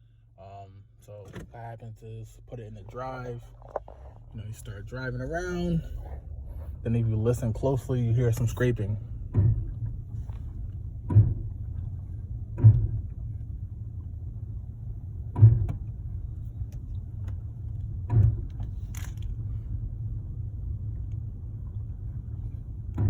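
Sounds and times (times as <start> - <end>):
car rolling rumble: 0.0 - 23.0
dull thumps under braking: 1.0 - 23.0.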